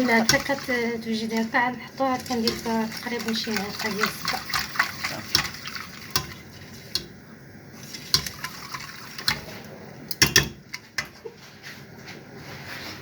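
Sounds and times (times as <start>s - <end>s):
soft wet churning: 0.0s - 11.4s
utensil clinking against pan: 2.2s - 7.2s, 8.0s - 11.2s.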